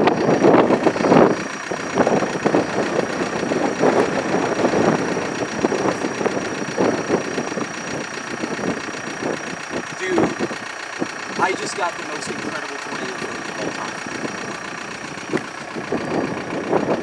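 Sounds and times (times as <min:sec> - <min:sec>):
vehicle engine from inside: 0:00.0 - 0:17.0.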